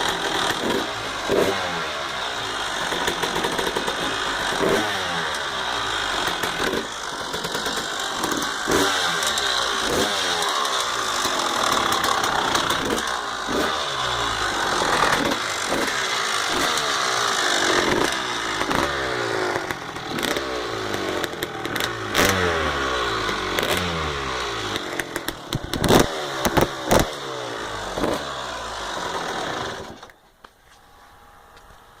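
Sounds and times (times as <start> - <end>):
two-stroke engine revving: 0.0 - 30.2
engine rattling: 0.0 - 32.0
loud sharp cracks: 2.8 - 27.2.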